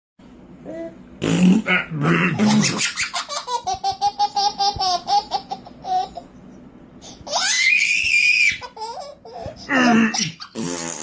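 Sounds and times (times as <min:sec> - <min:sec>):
baby laughing: 0:02.4 - 0:06.3, 0:07.3 - 0:10.6.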